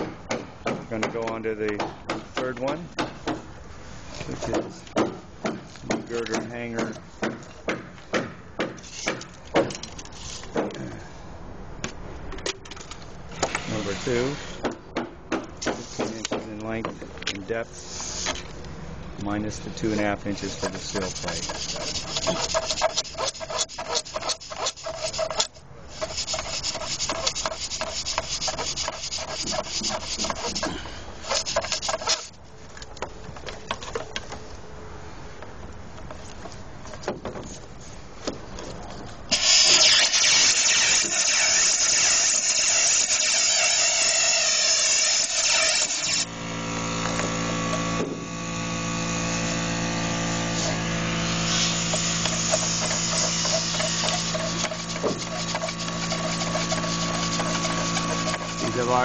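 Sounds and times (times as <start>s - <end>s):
hammer drill boring into concrete: 39.3s - 46.3s, 51.5s - 59.0s
steady motor hum: 44.3s - 59.0s.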